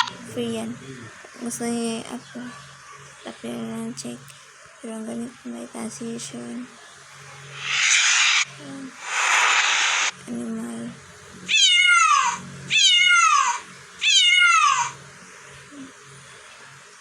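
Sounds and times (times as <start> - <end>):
hissing noise burst: 7.5 - 10.2
cat meowing: 11.5 - 15.0.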